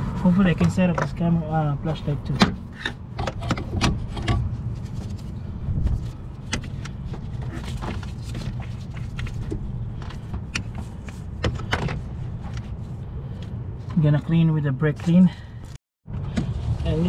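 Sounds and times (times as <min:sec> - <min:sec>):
steady low rumble: 0:00.0 - 0:17.0.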